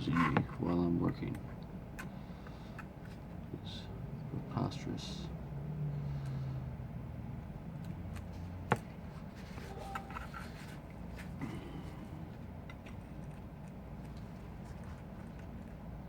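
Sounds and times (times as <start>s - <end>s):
low steady hum: 9.0s - 16.0s.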